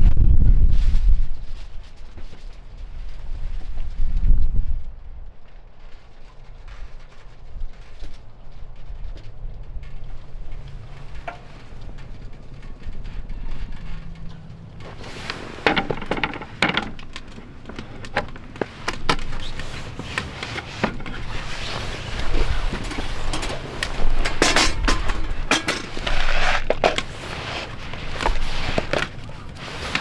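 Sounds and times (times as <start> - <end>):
objects being handled: 10.4 - 30.0.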